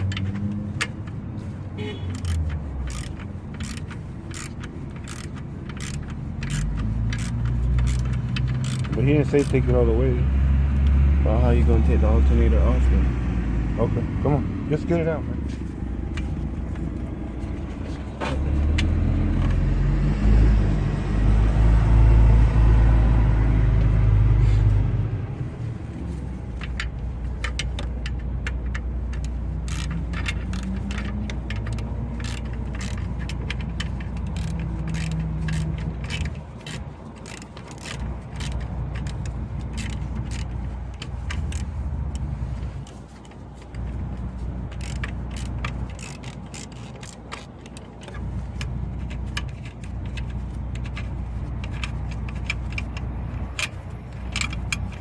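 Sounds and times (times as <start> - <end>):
hand tools clicking on metal: 0.0 - 10.2, 26.1 - 55.0.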